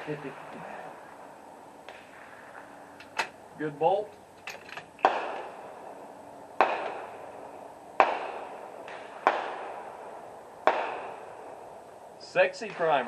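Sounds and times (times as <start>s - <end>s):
gunshots echoing: 1.8s - 3.4s, 4.9s - 11.7s.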